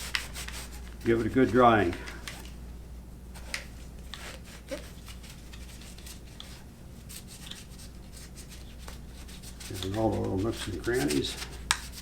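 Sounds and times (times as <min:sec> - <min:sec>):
towel wiping metal parts: 0:00.0 - 0:02.1, 0:07.3 - 0:12.0.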